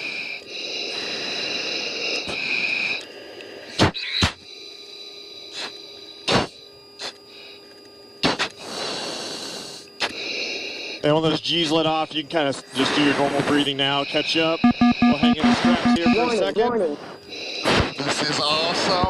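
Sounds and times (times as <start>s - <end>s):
heavy breathing through oxygen mask: 0.0s - 3.8s, 4.4s - 7.7s, 8.3s - 11.0s, 12.7s - 13.4s, 17.0s - 18.0s.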